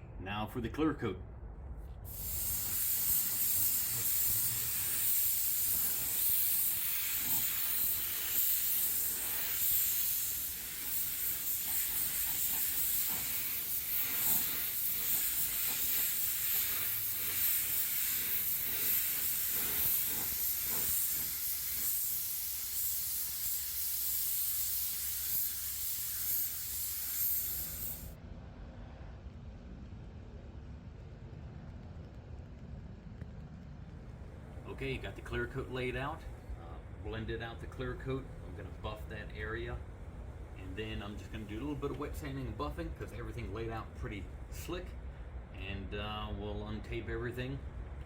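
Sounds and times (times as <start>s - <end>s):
spray gun hissing: 2.1s - 28.2s.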